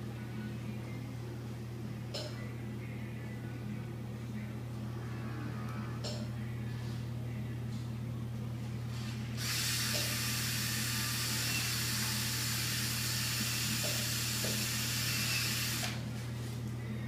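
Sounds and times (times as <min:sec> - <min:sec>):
power drill hissing: 0:09.4 - 0:16.0.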